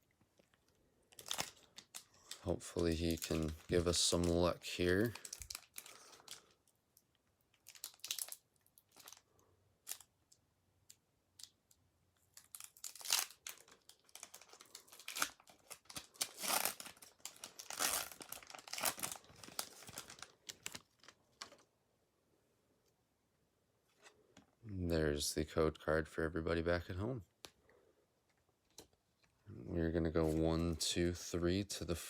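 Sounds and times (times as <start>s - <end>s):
foil wrapper crinkling and tearing: 1.1s - 6.6s, 7.5s - 10.1s, 12.3s - 21.7s.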